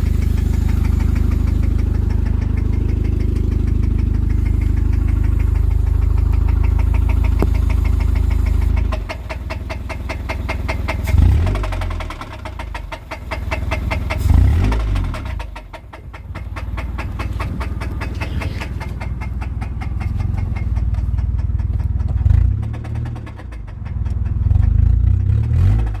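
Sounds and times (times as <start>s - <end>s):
car engine with rhythmic knock: 0.0s - 26.0s
engine revving: 10.2s - 15.6s, 24.4s - 26.0s.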